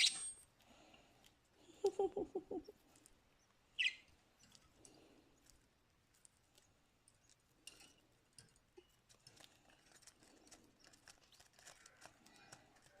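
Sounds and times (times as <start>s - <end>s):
faint clicks and scratches: 2.6s - 13.0s.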